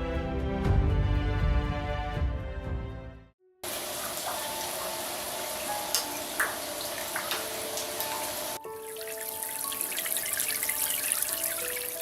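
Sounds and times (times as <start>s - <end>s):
faint crackling trickle: 3.6s - 12.0s
soft background music: 4.0s - 12.0s.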